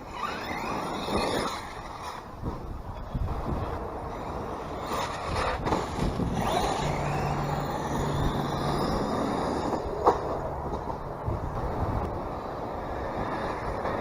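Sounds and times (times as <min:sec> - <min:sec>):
tyre noise: 0:00.0 - 0:14.0
wind: 0:00.0 - 0:14.0
electric motor whining: 0:05.0 - 0:09.9.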